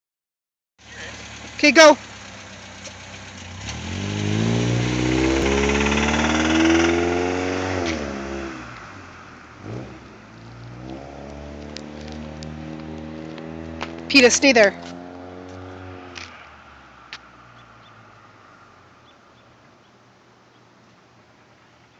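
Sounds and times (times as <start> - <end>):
car engine idling and revving: 0.8 - 21.8.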